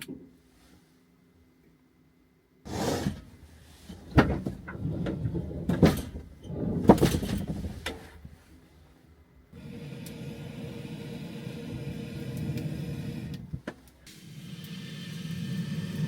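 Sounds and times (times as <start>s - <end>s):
knocks and clatters of handling: 3.0s - 8.4s.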